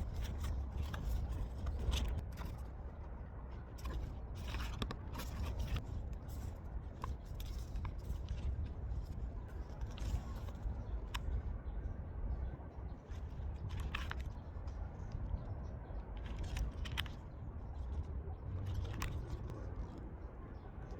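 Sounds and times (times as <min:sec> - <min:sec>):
cardboard and plastic rustling: 0:00.0 - 0:02.8, 0:03.6 - 0:10.7, 0:16.2 - 0:17.2.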